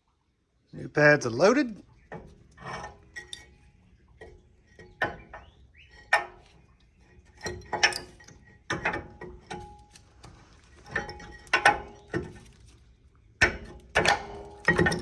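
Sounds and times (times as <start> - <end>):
metal parts and tools clinking: 2.5 - 3.7, 14.0 - 15.0.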